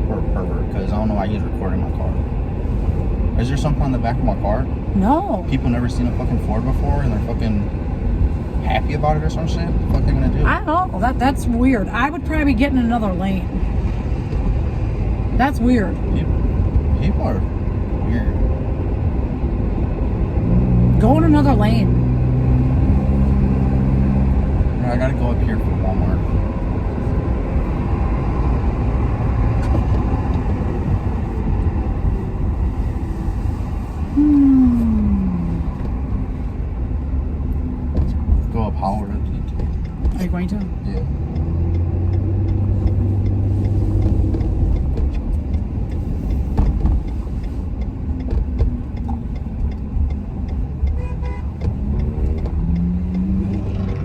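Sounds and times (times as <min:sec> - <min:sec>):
road noise: 0:00.0 - 0:54.0
truck engine rumble: 0:00.0 - 0:54.0.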